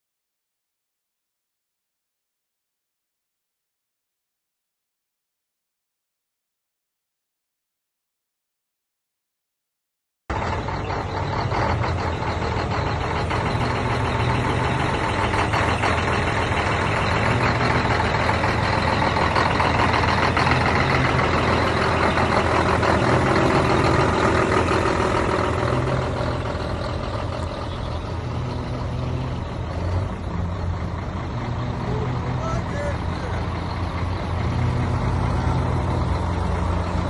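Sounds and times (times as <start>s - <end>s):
heavy truck engine running: 10.3s - 37.0s.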